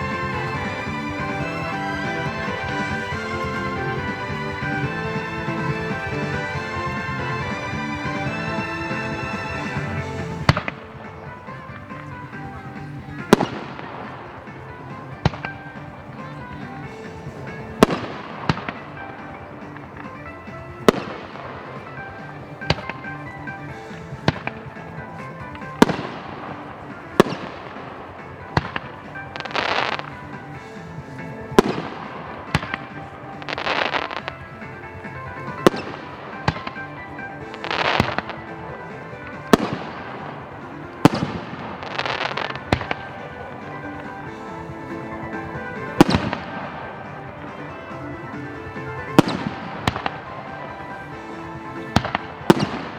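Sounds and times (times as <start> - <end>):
background music: 0.0 - 52.9
fireworks bursting: 0.0 - 52.9
fireworks hissing tail: 0.0 - 52.9.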